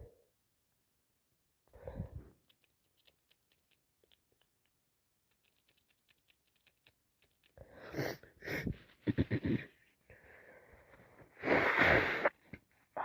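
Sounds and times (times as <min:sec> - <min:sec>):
wet clicks and sniffs: 0:02.4 - 0:09.1
wheezy gasping breaths: 0:07.6 - 0:09.0.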